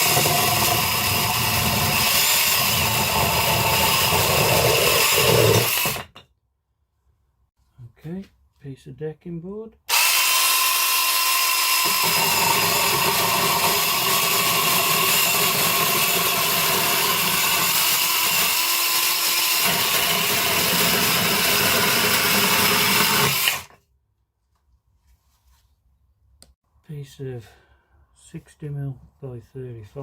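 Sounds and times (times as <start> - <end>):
mini chainsaw whining: 0.0 - 6.2, 9.9 - 23.8.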